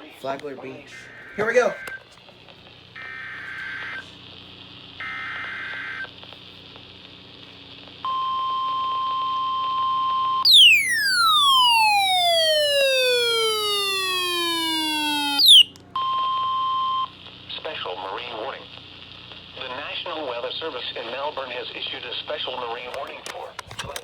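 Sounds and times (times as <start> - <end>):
steady warning alarm tone: 0.9 - 2.2, 8.4 - 17.1
data tone bursts: 1.0 - 2.0, 10.5 - 15.7
falling glide tone: 10.5 - 15.6.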